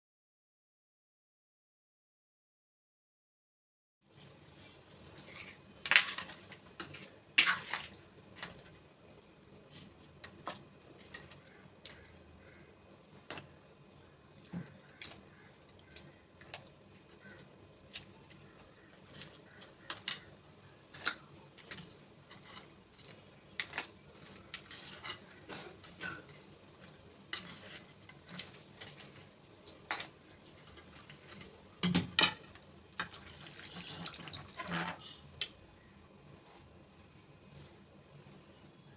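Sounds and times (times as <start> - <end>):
metal utensils and dishes clinking: 5.2 - 8.8, 9.7 - 12.2, 18.0 - 35.2.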